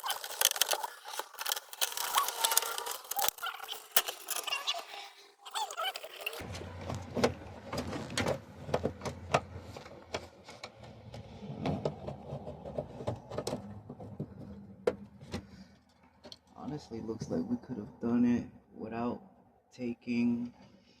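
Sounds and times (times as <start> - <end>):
clicks knocks and rattles: 0.0 - 4.7.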